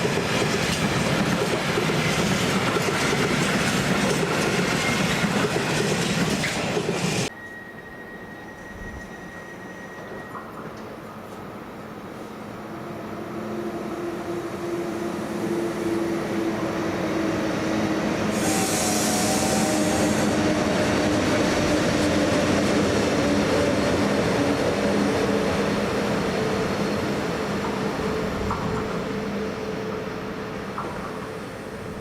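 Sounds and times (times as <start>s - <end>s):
electric train humming: 0.0s - 32.0s
wheels rumbling on rail: 13.0s - 32.0s.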